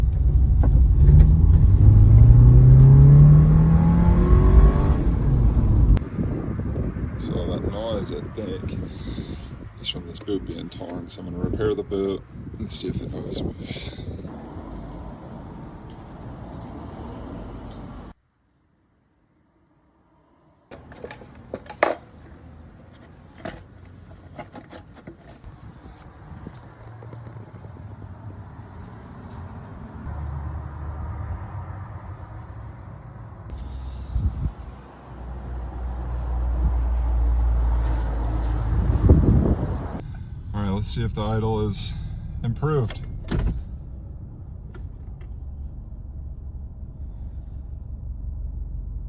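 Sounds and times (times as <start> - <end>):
tools clinking and knocking: 20.7 - 22.3, 23.0 - 25.4
car engine rough idle: 40.0 - 49.0
low steady hum: 40.0 - 49.0.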